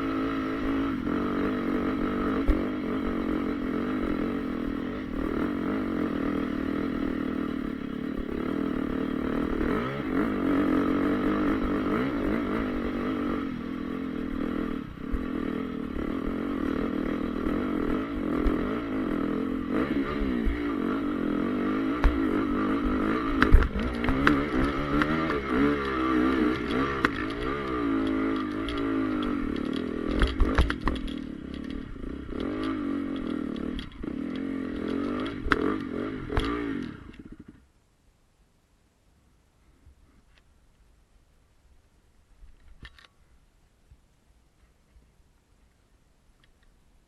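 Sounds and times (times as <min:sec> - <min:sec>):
motocross bike engine revving: 0:00.0 - 0:37.6.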